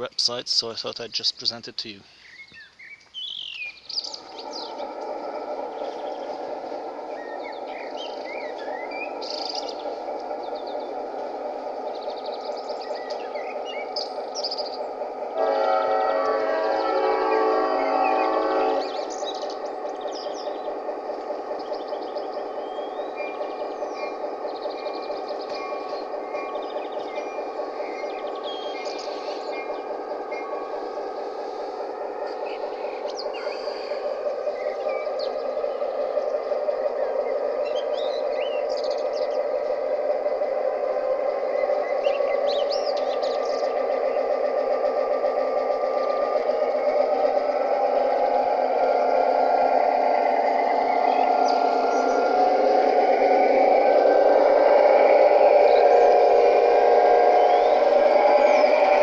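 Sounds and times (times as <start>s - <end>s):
birds chirping: 0.0s - 59.0s
diesel engine drone from small speaker: 4.2s - 59.0s
air horn blast: 15.4s - 19.0s.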